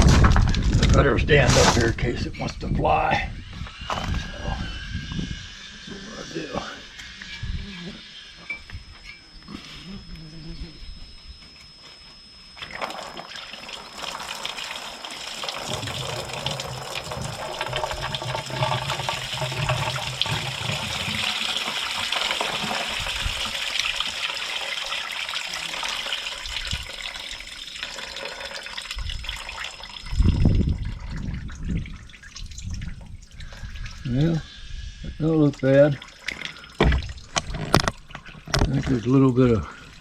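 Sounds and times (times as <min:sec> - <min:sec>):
coolant pouring into container: 0:12.6 - 0:34.4.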